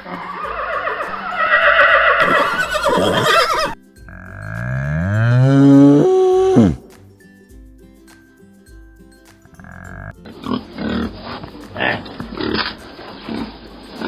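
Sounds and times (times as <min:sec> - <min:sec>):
horse whinnying: 0:00.0 - 0:06.9
cow mooing: 0:00.1 - 0:06.9, 0:09.6 - 0:11.1.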